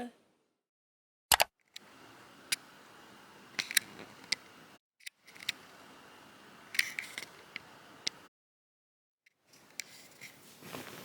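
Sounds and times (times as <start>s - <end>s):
sharp clicks: 1.3s - 1.9s
faint steady hiss: 1.8s - 8.3s, 9.5s - 11.0s.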